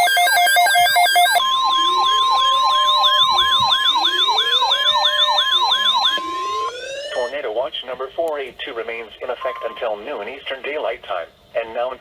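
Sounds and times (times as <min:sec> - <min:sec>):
rapid pulsing beep: 0:00.0 - 0:01.4
steady warning alarm tone: 0:00.0 - 0:07.3
warbling siren sweep: 0:00.0 - 0:07.3.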